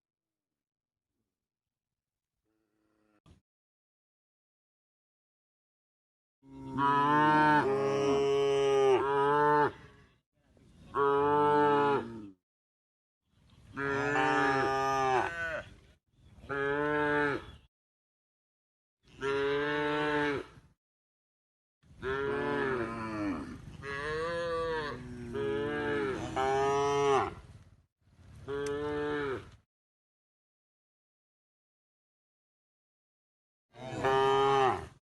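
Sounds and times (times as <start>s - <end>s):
cow mooing: 6.4s - 9.8s, 13.8s - 15.6s, 16.5s - 17.5s, 19.2s - 20.6s, 22.0s - 27.4s, 28.5s - 29.5s, 33.8s - 35.0s.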